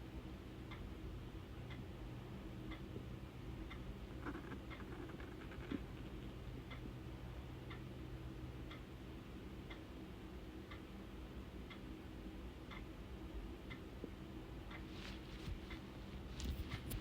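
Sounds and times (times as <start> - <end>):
low steady hum: 0.0 - 17.0
clock ticking: 2.6 - 9.0, 12.6 - 12.9, 13.6 - 17.0.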